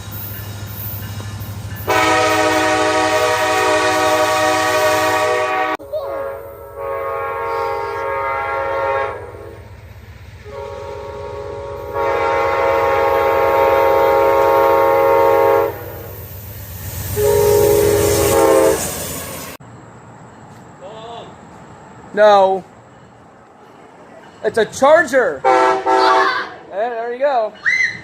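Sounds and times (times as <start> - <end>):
train rumbling: 0.0 - 28.0
locomotive air horn blasts: 1.9 - 9.7, 10.4 - 16.1, 17.0 - 19.0, 25.4 - 26.5.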